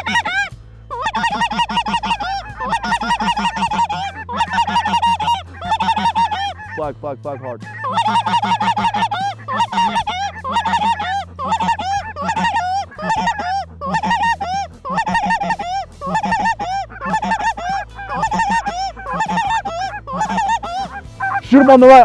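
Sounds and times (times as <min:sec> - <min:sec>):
geese yelping and honking: 0:00.0 - 0:06.8, 0:07.4 - 0:22.0.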